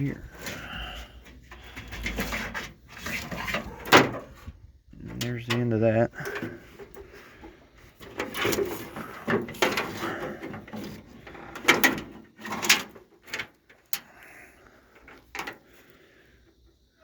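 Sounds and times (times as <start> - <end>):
cable scraping and sliding: 0.0 - 4.5.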